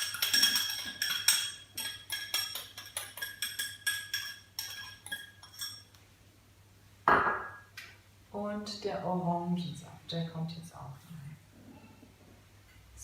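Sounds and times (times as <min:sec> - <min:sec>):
metal utensil clinking on dish: 0:00.0 - 0:05.9.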